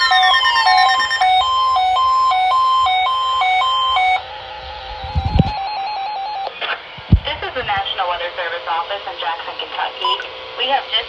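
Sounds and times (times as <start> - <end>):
two-tone warbling alarm: 0.0 - 7.8
low thumps: 4.7 - 5.6.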